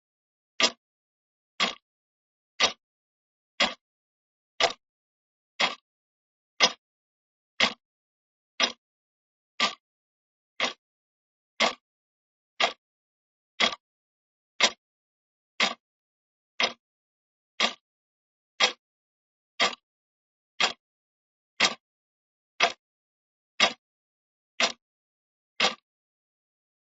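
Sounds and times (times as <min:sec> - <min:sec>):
clock ticking: 0:00.6 - 0:00.8, 0:01.6 - 0:01.8, 0:02.6 - 0:02.8, 0:03.6 - 0:03.8, 0:04.6 - 0:04.8, 0:05.6 - 0:05.8, 0:06.6 - 0:06.8, 0:07.6 - 0:07.8, 0:08.6 - 0:08.8, 0:09.6 - 0:09.8, 0:10.6 - 0:10.8, 0:11.6 - 0:11.8, 0:12.6 - 0:12.8, 0:13.6 - 0:13.8, 0:14.6 - 0:14.8, 0:15.6 - 0:15.8, 0:16.6 - 0:16.8, 0:17.6 - 0:17.8, 0:18.6 - 0:18.8, 0:19.6 - 0:19.8, 0:20.6 - 0:20.8, 0:21.6 - 0:21.8, 0:22.6 - 0:22.8, 0:23.6 - 0:23.8, 0:24.6 - 0:24.8, 0:25.6 - 0:25.8.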